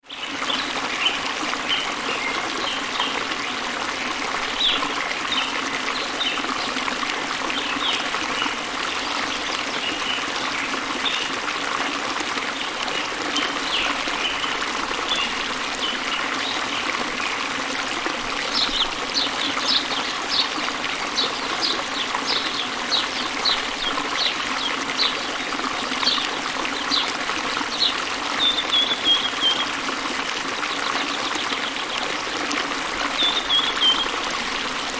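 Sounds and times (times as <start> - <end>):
waterfall running: 0.1 - 34.9
birds chirping: 26.0 - 29.8, 33.2 - 34.6.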